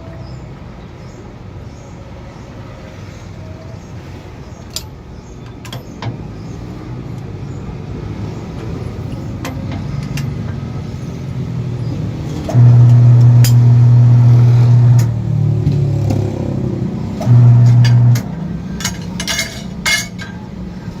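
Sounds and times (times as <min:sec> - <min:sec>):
low background hum: 0:09.1 - 0:21.0
electric motor mains hum: 0:11.9 - 0:19.2.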